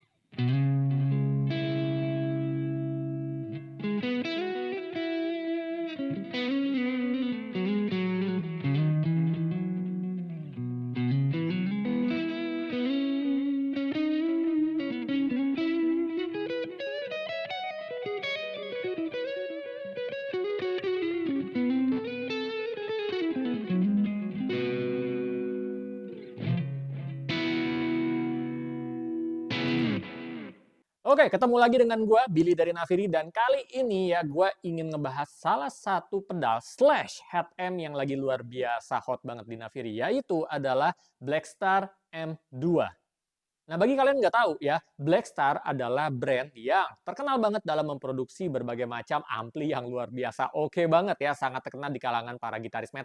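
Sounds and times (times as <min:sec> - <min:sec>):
electric guitar: 0:00.3 - 0:30.7.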